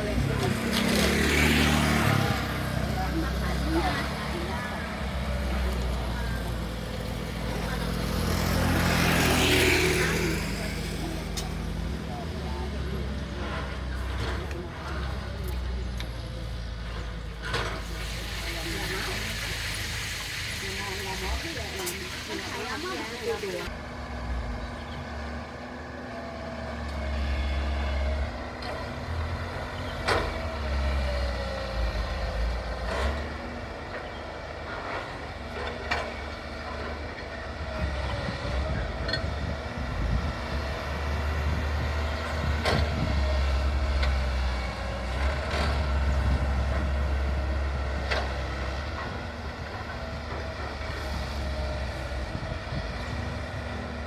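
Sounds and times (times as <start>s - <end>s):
heavy machinery engines running: 0.0s - 54.0s.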